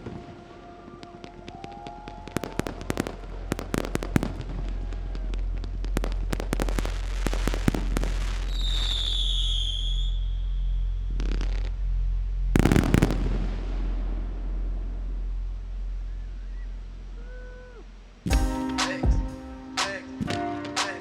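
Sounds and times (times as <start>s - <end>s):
whistle firework: 0.0s - 5.4s, 6.0s - 11.7s
fireworks reports and crackles: 0.0s - 11.9s, 12.5s - 19.2s
low rumble: 1.2s - 18.3s.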